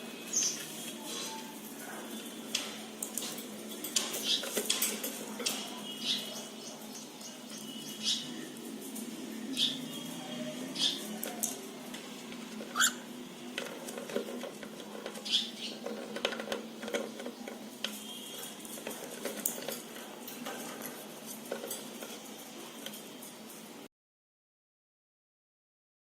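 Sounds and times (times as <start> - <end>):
claws and beaks clicking: 0.3 - 10.0, 10.8 - 23.4
bird chirps: 5.9 - 8.5.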